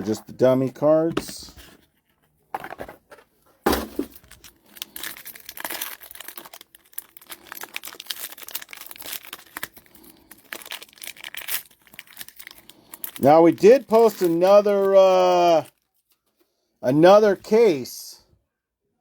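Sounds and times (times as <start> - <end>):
plastic packaging crinkling and tearing: 4.0 - 16.3.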